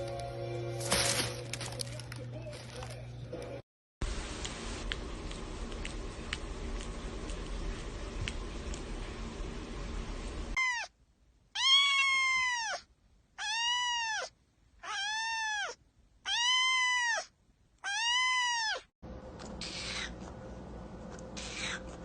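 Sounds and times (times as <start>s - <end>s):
cat meowing: 11.6s - 18.9s.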